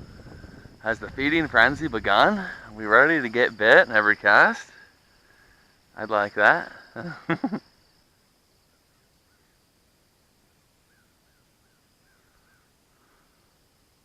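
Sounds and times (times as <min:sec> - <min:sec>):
distant bird chirps: 0:00.0 - 0:13.6
faint high-pitched hum: 0:00.0 - 0:14.0.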